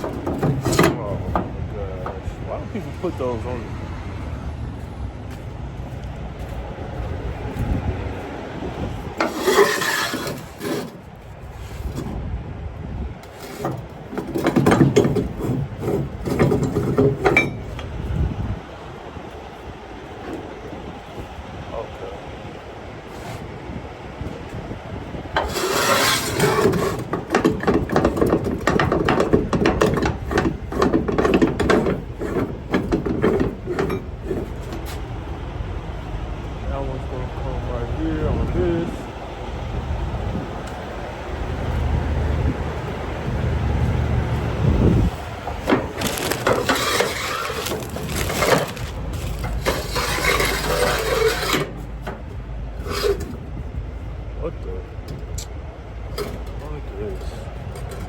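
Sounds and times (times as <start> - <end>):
metal knocking on metal: 0.0 - 2.3, 25.4 - 34.8
webbing straps rubbing and scraping: 9.1 - 12.2, 25.4 - 35.0, 44.9 - 51.9, 52.8 - 53.4.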